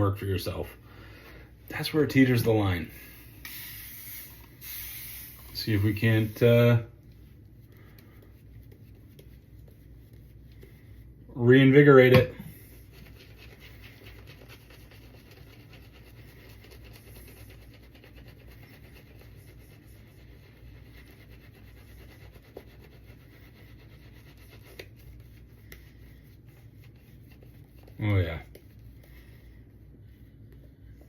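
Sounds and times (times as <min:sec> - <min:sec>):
shaving brush whipping lather: 0:01.8 - 0:06.9, 0:12.0 - 0:29.0.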